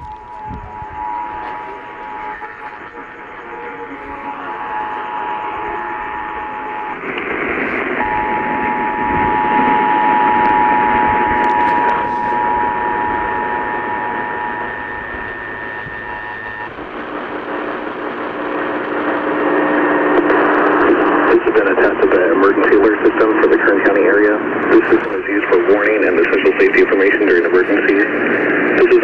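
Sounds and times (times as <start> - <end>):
two-tone alarm: 0.0 - 16.8
radio static hiss: 0.0 - 29.0.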